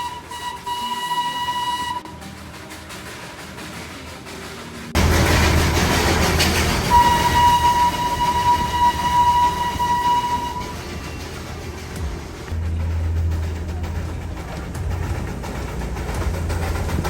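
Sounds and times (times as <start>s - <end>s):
train whistle blast: 0.0s - 2.3s, 6.8s - 11.0s
train running: 0.0s - 17.0s.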